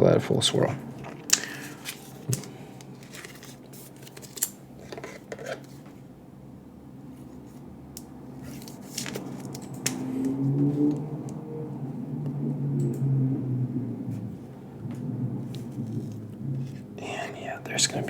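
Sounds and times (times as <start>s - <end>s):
trading cards and packaging clicks: 1.2s - 5.8s
low hum: 6.6s - 18.0s.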